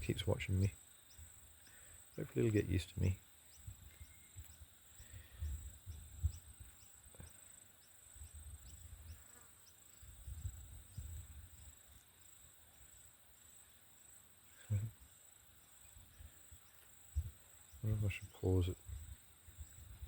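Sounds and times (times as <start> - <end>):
insects chirping in a pulsing trill: 0.0 - 20.0.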